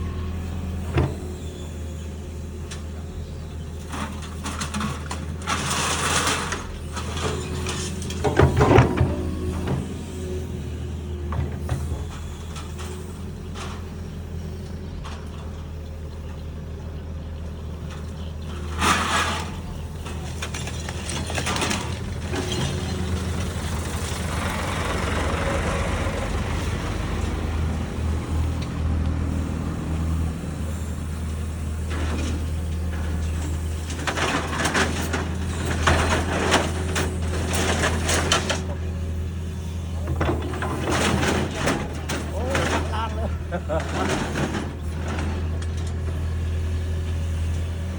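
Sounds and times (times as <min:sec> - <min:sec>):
excavator diesel engine: 0:00.0 - 0:47.9
steel clanking and rattling: 0:03.7 - 0:16.4, 0:17.8 - 0:25.3, 0:29.9 - 0:47.9.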